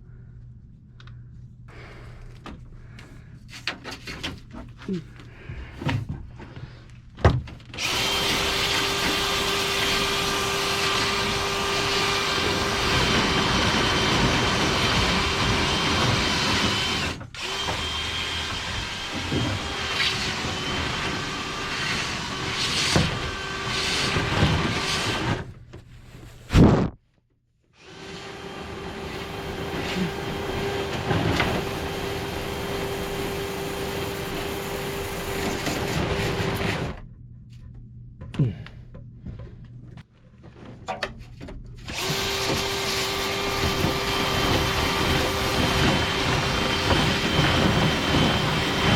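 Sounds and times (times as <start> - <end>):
power drill whining: 7.8 - 25.5, 27.8 - 37.0, 41.9 - 48.9.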